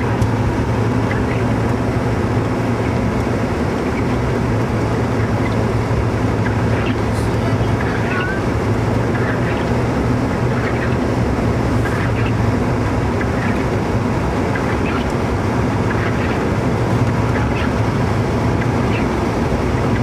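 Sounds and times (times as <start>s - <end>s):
car engine hum: 0.0s - 20.0s
road and tyre noise: 0.0s - 20.0s.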